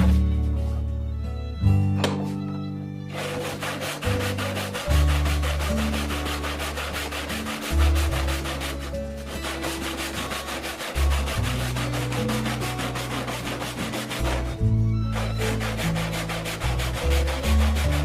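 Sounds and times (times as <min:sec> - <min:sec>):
background music: 0:00.0 - 0:18.0
saw rasping through wood: 0:03.1 - 0:18.0.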